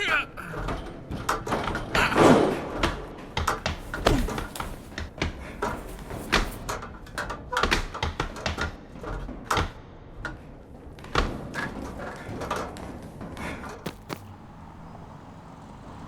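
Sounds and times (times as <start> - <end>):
sharp knocks taps and thuds: 7.5 - 14.5.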